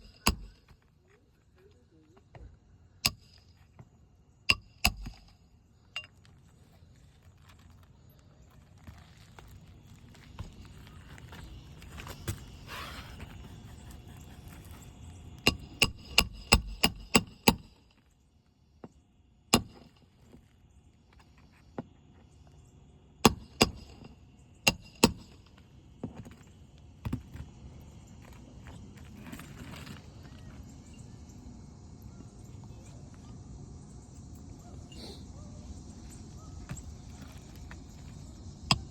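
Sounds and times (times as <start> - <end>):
hammer blows on shingle roof: 0.0 - 0.8, 4.5 - 5.4, 15.4 - 17.8, 18.8 - 20.0, 23.2 - 26.4, 38.6 - 38.9.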